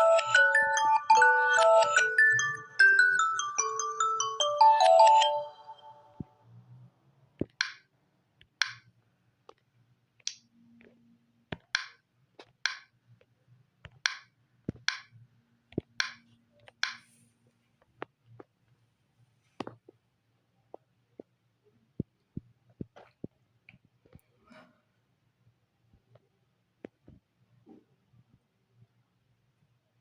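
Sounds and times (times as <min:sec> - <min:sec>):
marimba-like alarm tone: 0:00.0 - 0:06.2.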